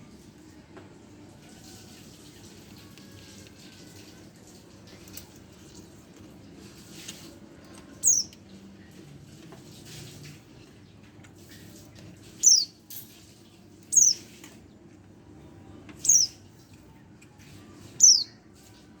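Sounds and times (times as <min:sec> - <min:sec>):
young bird chirping: 0:08.0 - 0:08.3, 0:12.4 - 0:12.8, 0:13.9 - 0:14.3, 0:16.0 - 0:16.4, 0:18.0 - 0:18.4.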